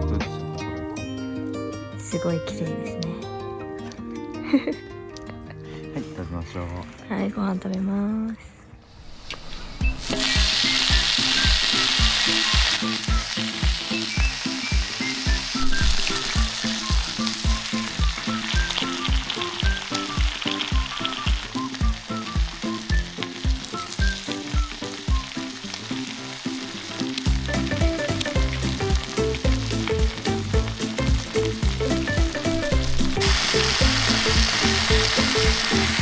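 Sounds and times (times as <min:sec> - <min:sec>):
background music with beat: 0:00.0 - 0:01.9, 0:09.6 - 0:36.0
food sizzling in frying pan: 0:09.0 - 0:36.0.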